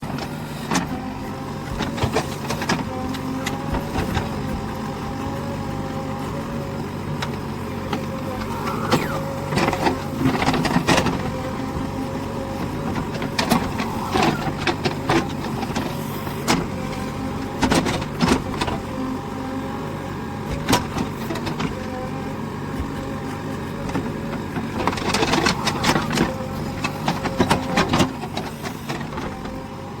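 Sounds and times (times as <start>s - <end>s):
backhoe engine and hydraulics whine: 0.0s - 30.0s
bucket and arm clanking: 7.1s - 29.6s.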